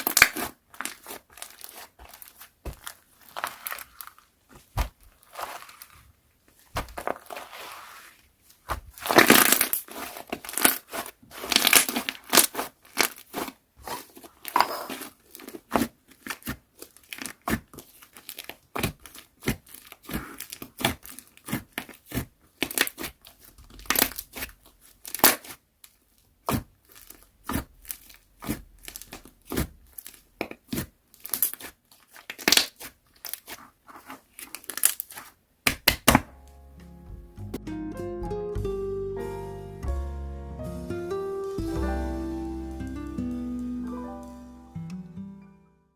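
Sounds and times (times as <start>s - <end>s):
slime crackling and popping: 0.0s - 6.0s, 8.6s - 36.5s.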